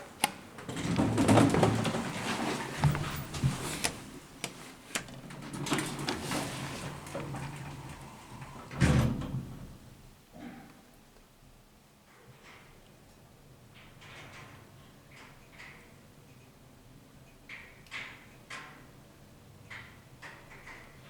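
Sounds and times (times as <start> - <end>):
elevator doors sliding: 0.4 - 10.0.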